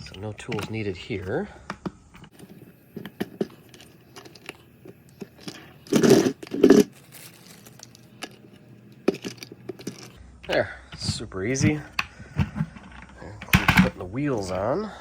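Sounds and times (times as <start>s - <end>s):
plastic clicks and knocks: 11.6s - 14.0s.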